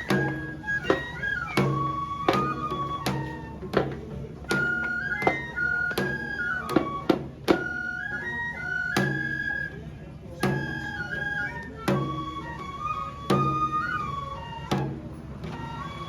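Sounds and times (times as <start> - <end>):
bamboo flute melody: 0.0 - 16.0.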